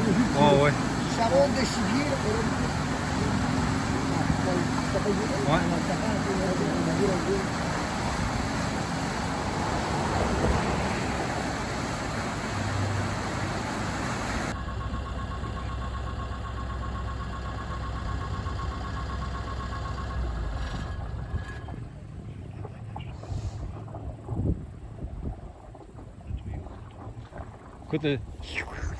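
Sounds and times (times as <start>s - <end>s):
water rushing through culvert: 0.0s - 14.6s
excavator diesel engine running: 0.0s - 22.5s
faint pulsing whine: 0.0s - 28.9s.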